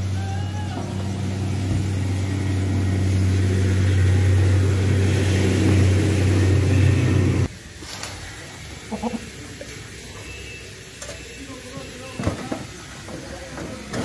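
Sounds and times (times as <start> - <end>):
low engine drone: 0.0 - 7.5.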